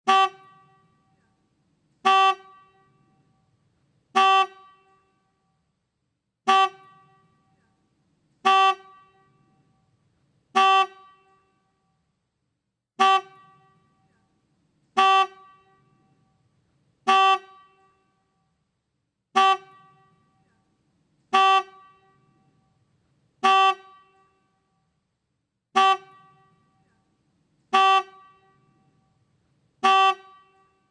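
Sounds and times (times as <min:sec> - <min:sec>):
motorcycle horn honks: 0:00.0 - 0:01.2, 0:02.0 - 0:03.4, 0:04.2 - 0:05.4, 0:06.4 - 0:07.7, 0:08.4 - 0:09.9, 0:10.5 - 0:12.0, 0:13.0 - 0:14.2, 0:15.0 - 0:16.4, 0:17.0 - 0:18.4, 0:19.3 - 0:20.5, 0:21.3 - 0:22.8, 0:23.4 - 0:24.9, 0:25.7 - 0:27.0, 0:27.7 - 0:29.2, 0:29.8 - 0:30.9.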